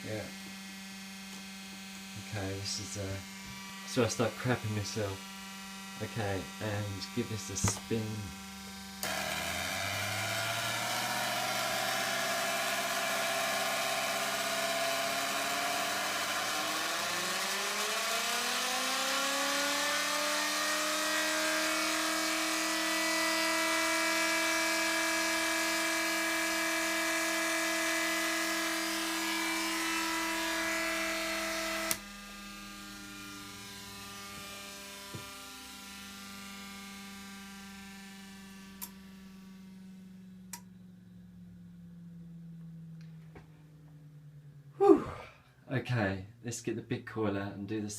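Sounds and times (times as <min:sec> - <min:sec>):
pulse motor buzzing whine: 0:00.0 - 0:45.5
low steady hum: 0:37.4 - 0:47.9.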